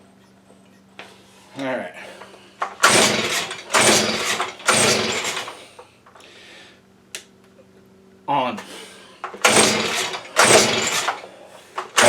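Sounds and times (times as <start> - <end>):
recoil starter pulls: 2.2 - 5.9, 8.6 - 12.0
leaf blower engine cranking: 2.6 - 5.8, 9.2 - 12.0.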